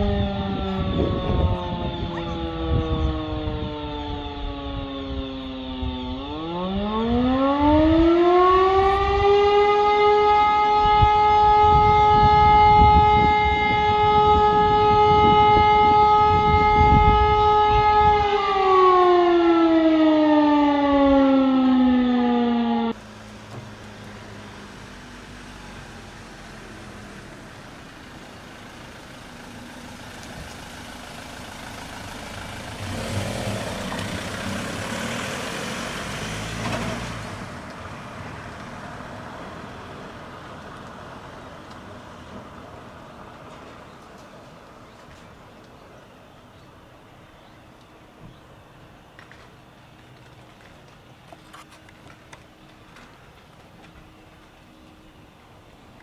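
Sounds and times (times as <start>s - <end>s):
fire alarm siren: 0.0s - 23.0s
steady background noise: 36.4s - 56.0s.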